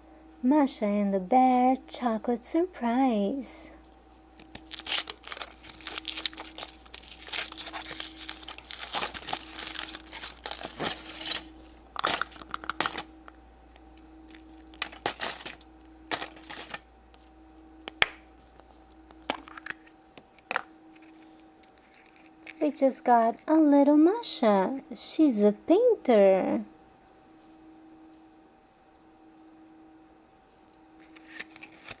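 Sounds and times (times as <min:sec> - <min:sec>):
foil wrapper crinkling and tearing: 0:04.4 - 0:13.3, 0:14.3 - 0:16.8, 0:19.2 - 0:23.4, 0:31.0 - 0:32.0.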